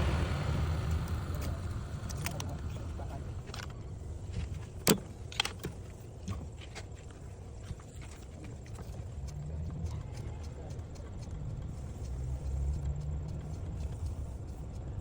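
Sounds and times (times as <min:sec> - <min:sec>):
car starter cranking: 0:00.0 - 0:03.8
sharp clicks: 0:08.7 - 0:15.0.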